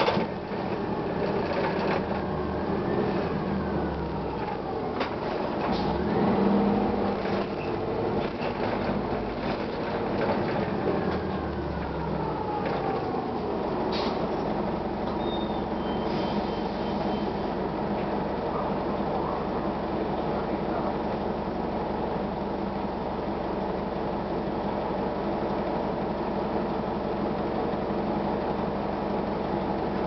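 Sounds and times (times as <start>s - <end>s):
bus engine droning: 0.0s - 30.0s
rattles and clicks: 1.0s - 2.2s, 7.1s - 11.2s.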